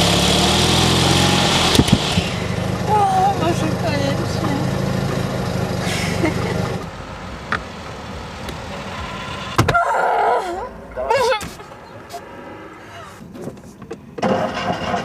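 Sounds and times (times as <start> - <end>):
small car engine running: 0.0 - 9.6.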